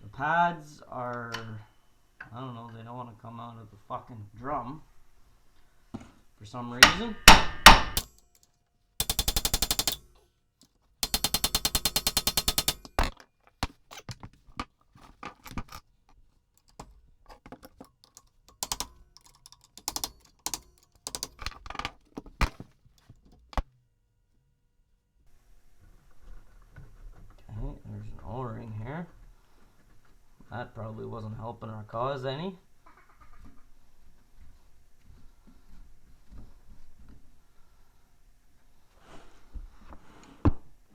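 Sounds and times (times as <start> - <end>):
air tool hammering: 6.8 - 8.2, 9.0 - 10.2, 11.0 - 13.8, 17.5 - 22.6
metallic clinks of tools: 6.8 - 10.2, 11.0 - 14.3, 16.6 - 23.6.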